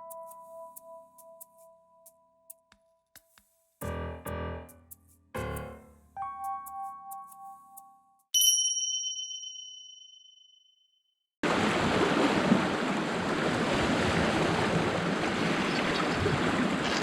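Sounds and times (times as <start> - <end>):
bright bell-like chime: 8.4 - 10.7
wind on microphone: 13.5 - 17.0.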